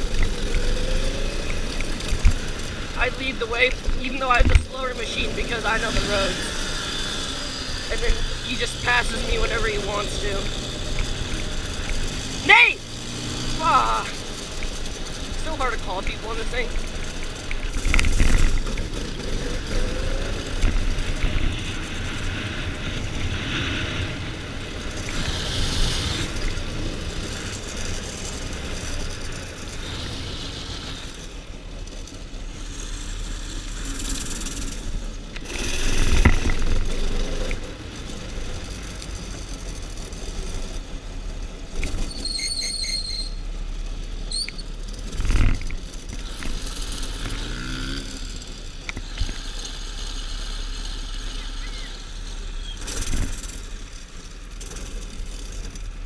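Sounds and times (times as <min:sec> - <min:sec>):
off-road vehicle engine running: 0:00.0 - 0:56.0
high-pitched squeal: 0:41.9 - 0:43.5.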